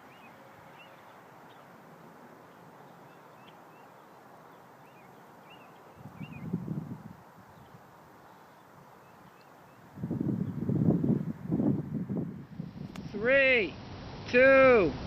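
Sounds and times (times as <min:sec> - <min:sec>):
faint birds chirping: 0:00.0 - 0:11.6
outdoor background hiss: 0:00.0 - 0:15.0.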